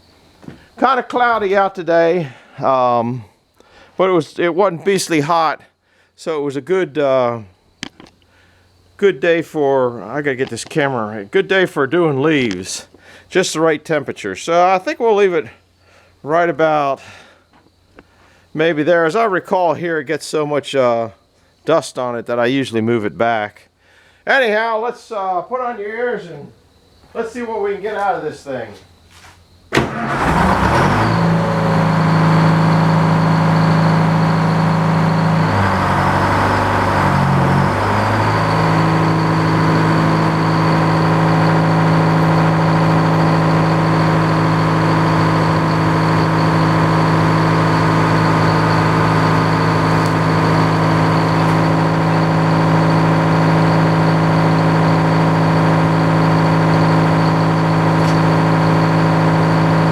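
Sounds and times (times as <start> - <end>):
sawmill engine running: 29.7 - 59.9
high circular saw whine: 29.8 - 59.9.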